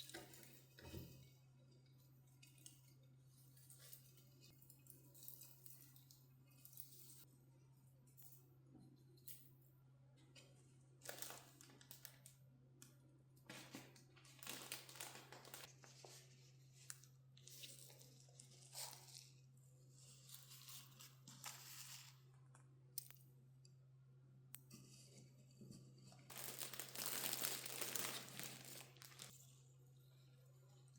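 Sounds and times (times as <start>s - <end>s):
rustling and crinkling: 13.4s - 22.6s, 24.7s - 29.7s.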